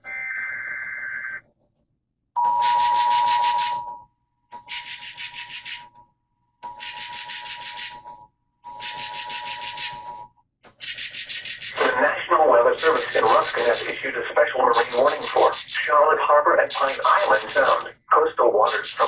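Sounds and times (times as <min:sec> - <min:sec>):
steady warning alarm tone: 0:02.4 - 0:05.9, 0:06.6 - 0:17.9
two-tone electronic data burst: 0:02.5 - 0:03.8, 0:08.7 - 0:10.0, 0:10.8 - 0:12.0.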